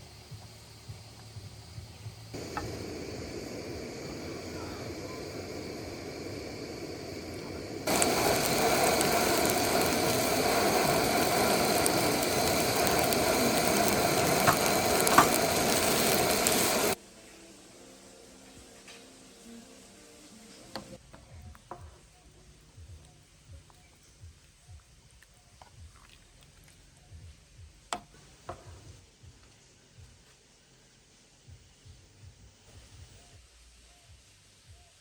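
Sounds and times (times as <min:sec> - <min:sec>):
waterfall rushing: 0:02.4 - 0:17.0.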